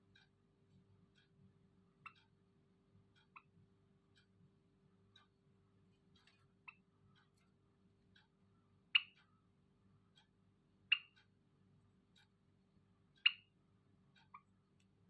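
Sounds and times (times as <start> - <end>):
faint clicks: 5.1 - 8.3
finch calls: 8.9 - 9.2, 10.9 - 11.2.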